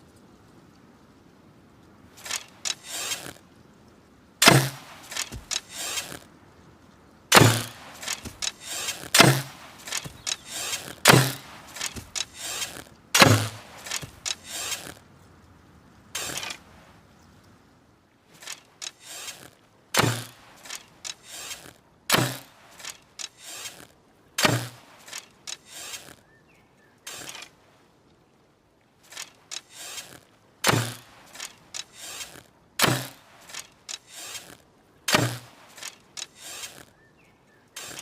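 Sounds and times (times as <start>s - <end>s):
light clicks and rattles: 0.0s - 15.6s, 18.3s - 21.8s, 22.7s - 26.2s, 29.0s - 36.9s
bow shot snap and thump: 4.4s - 6.2s, 7.3s - 14.8s, 20.0s - 20.8s, 22.1s - 22.5s, 24.4s - 25.9s, 30.6s - 31.5s, 32.8s - 33.7s, 35.1s - 36.0s.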